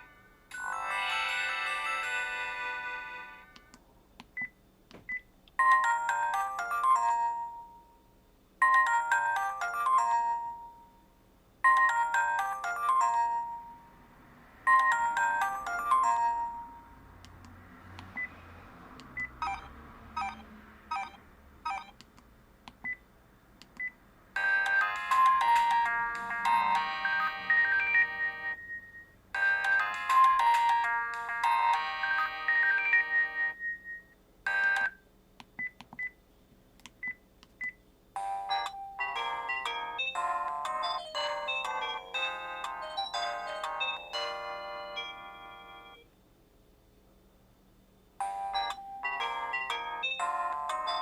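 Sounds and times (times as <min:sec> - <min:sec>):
ringtone melody: 0:00.0 - 0:03.6, 0:05.6 - 0:08.0, 0:08.6 - 0:11.0, 0:11.6 - 0:14.1, 0:14.7 - 0:17.2, 0:19.2 - 0:22.0, 0:24.4 - 0:35.0, 0:38.2 - 0:46.1, 0:48.2 - 0:51.0
phone beeps: 0:19.2 - 0:22.0, 0:32.5 - 0:35.0.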